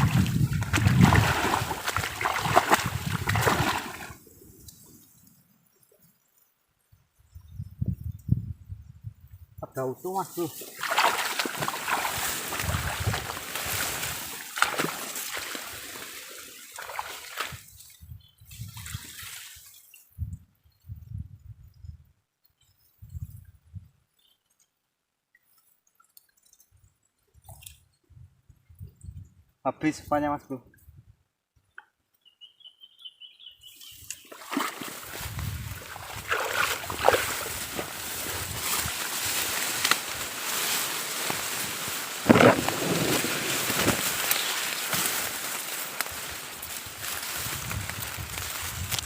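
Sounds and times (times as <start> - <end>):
water splashing and trickling: 0.0 - 5.4, 10.4 - 20.5, 33.9 - 49.0.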